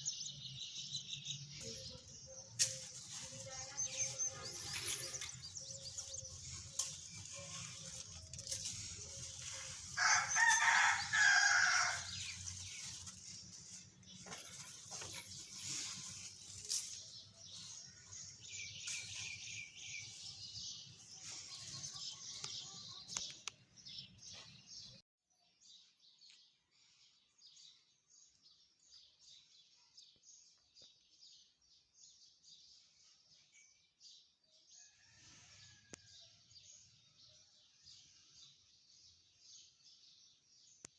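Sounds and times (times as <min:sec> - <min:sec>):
small birds chirping: 0:00.0 - 0:25.0
rooster crowing: 0:10.0 - 0:12.2.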